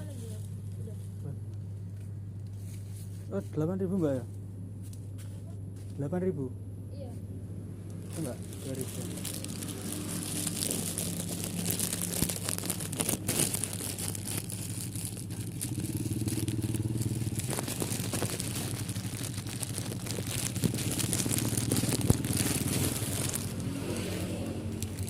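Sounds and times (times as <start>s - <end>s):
crackling and rustling: 7.9s - 25.0s
small engine running: 8.0s - 25.0s.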